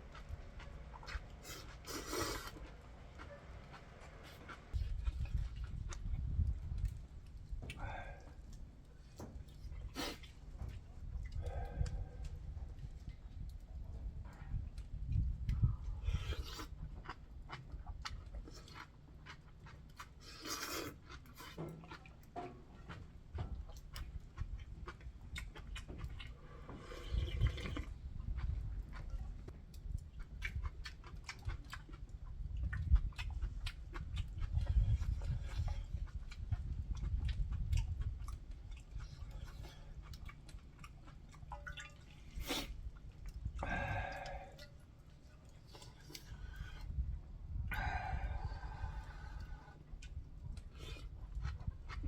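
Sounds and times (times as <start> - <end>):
mouth clicks and chewing: 0.0 - 52.0
noodle slurp: 1.1 - 2.7, 16.1 - 16.8, 20.0 - 21.6, 26.5 - 28.0, 41.6 - 42.9.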